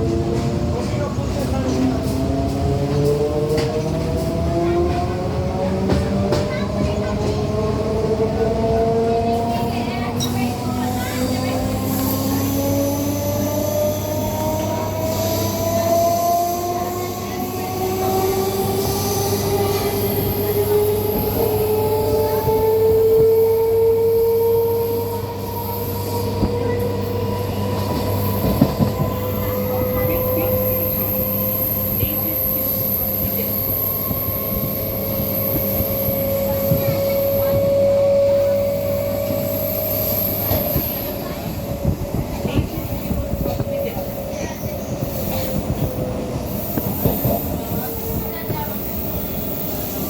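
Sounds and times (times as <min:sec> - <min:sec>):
train hum and rumble: 0:00.0 - 0:50.0.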